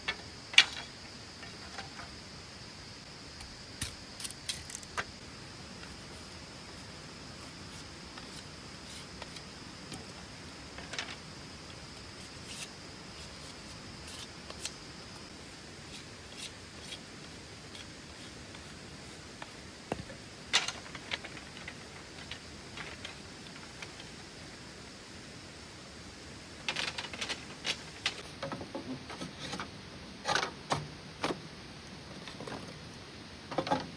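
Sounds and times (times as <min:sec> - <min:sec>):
background hiss: 0:00.0 - 0:33.9.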